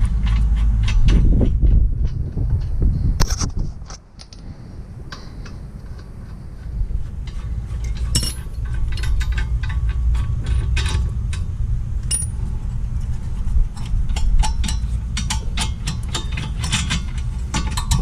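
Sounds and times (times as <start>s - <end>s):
low rumble: 0.0s - 18.0s
metal tools clinking and rattling: 7.3s - 18.0s.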